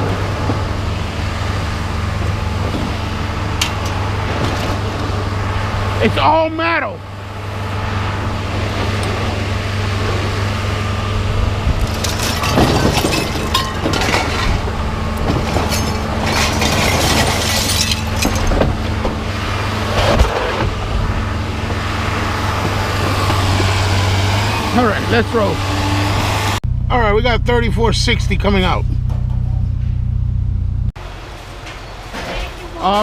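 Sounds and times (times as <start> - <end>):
vehicle engine idling: 0.0 - 33.0
metal clanks and rattles: 2.6 - 5.2, 11.7 - 19.3, 28.8 - 30.3, 31.3 - 33.0.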